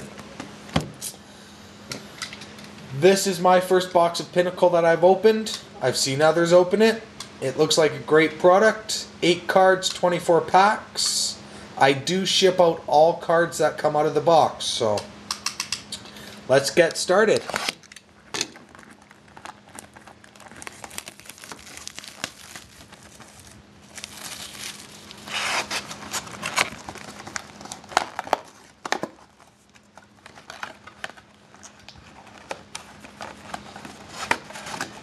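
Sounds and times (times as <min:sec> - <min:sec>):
plastic wrapping crinkling and tearing: 0:17.4 - 0:35.0.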